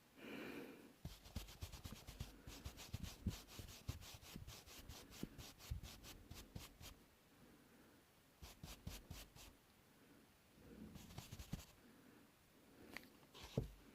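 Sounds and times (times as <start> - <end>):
brush scrubbing: 1.0 - 7.0, 8.4 - 9.5, 11.0 - 11.8.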